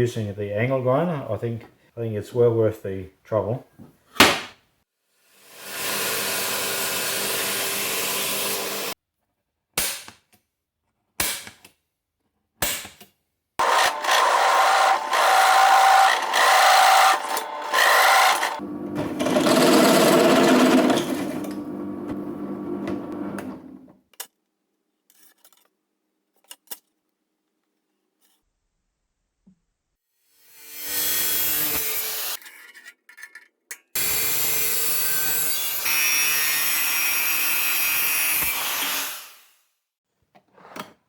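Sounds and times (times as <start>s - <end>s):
power tool motor running: 5.5s - 9.0s, 13.6s - 23.8s.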